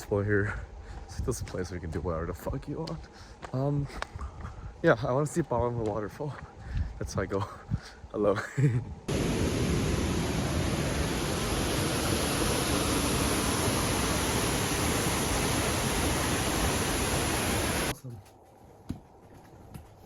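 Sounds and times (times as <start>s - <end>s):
waterfall rushing: 9.1s - 17.9s.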